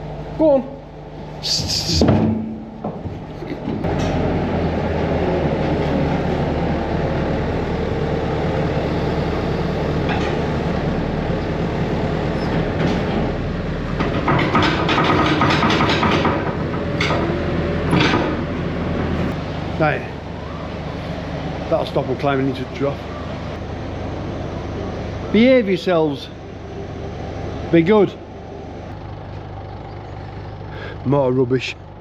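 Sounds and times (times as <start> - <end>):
engine running: 0.0 - 32.0
metal rattling and clanking: 13.9 - 18.5.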